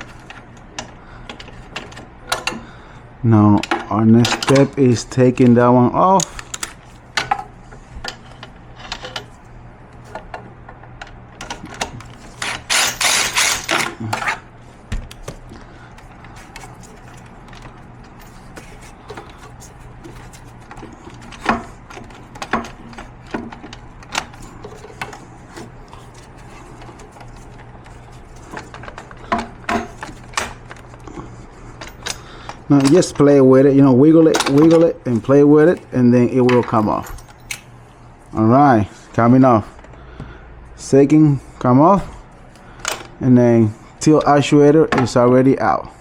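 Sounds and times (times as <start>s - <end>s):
steady low hum: 0.0s - 46.0s
hand tools clicking and knocking: 3.6s - 5.5s, 10.2s - 15.4s, 18.5s - 30.8s
metal parts rattling: 11.4s - 14.5s, 16.0s - 35.8s.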